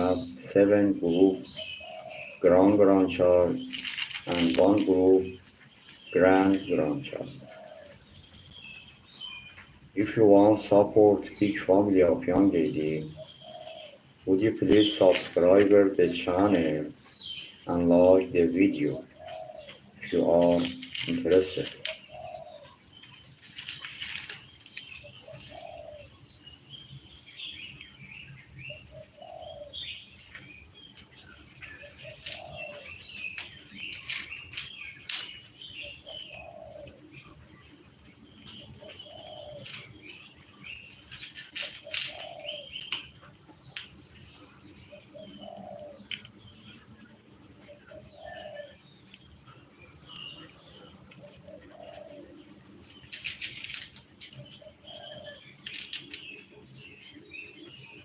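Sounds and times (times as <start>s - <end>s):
dove cooing: 0.0s - 5.4s, 6.0s - 8.1s, 10.0s - 17.0s, 17.8s - 26.2s, 28.6s - 30.0s, 31.2s - 37.4s, 38.5s - 43.1s, 44.3s - 46.7s, 47.6s - 48.8s, 50.1s - 57.6s
insect trilling: 0.0s - 58.0s
small birds chirping: 0.0s - 58.0s.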